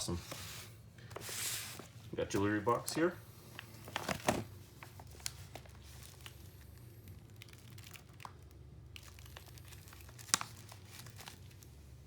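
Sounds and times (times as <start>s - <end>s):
steady low hum: 0.0s - 12.0s
plastic wrap crinkling: 3.5s - 12.0s.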